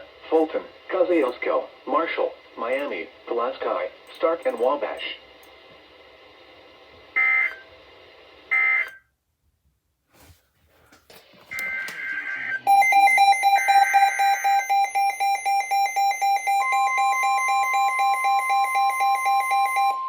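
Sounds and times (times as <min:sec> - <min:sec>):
rapid pulsing alarm beep: 0:11.5 - 0:20.0
steady warning tone: 0:11.5 - 0:20.0.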